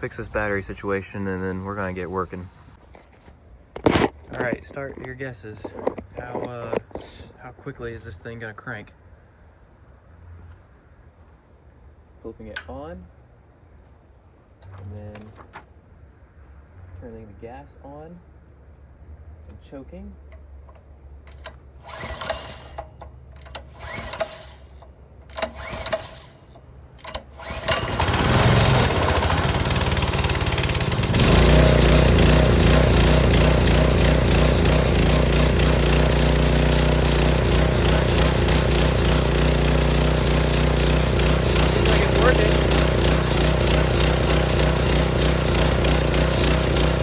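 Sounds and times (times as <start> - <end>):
small gasoline engine cranking: 21.3 - 47.0
small gasoline engine running: 21.8 - 22.8, 23.5 - 47.0.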